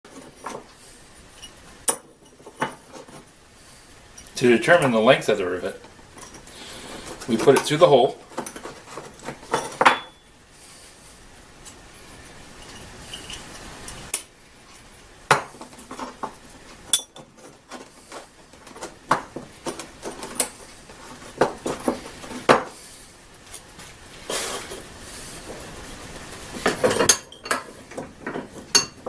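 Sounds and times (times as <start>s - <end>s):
small metal parts clinking: 12.6s - 14.0s.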